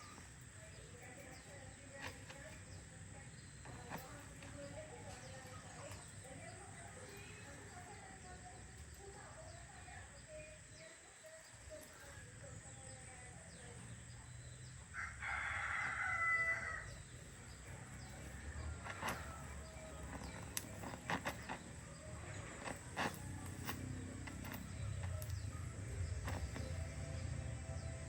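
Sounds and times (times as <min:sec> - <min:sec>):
rooster crowing: 0:14.9 - 0:17.0.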